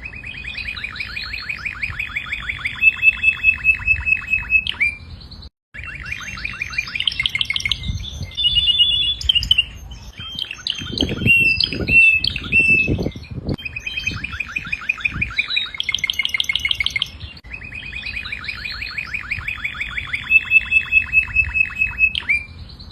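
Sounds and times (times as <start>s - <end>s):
canary singing trills: 0.0s - 22.9s.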